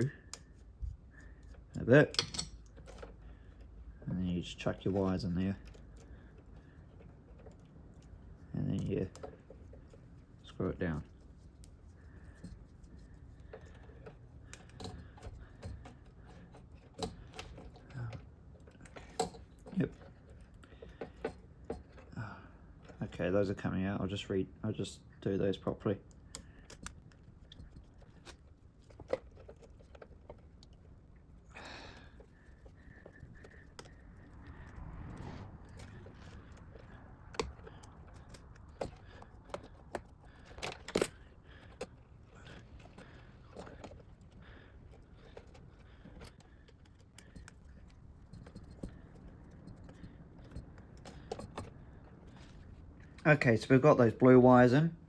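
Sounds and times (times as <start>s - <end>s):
wires being handled: 0.0s - 23.2s, 25.6s - 53.3s
screwdriver clicks and taps: 26.1s - 30.8s, 37.3s - 42.0s.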